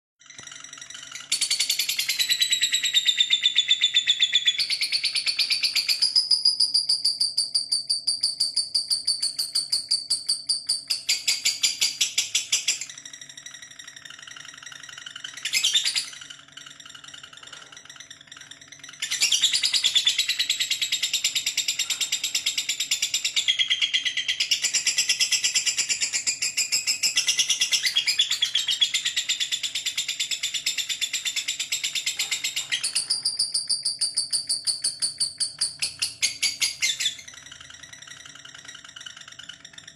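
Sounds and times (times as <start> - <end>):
lovebird chattering: 8.8 - 39.9.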